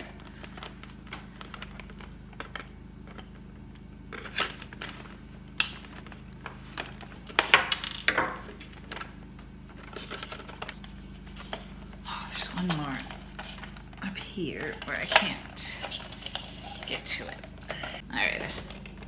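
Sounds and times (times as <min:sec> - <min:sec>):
rustling and scraping of fur: 0:09.8 - 0:18.0.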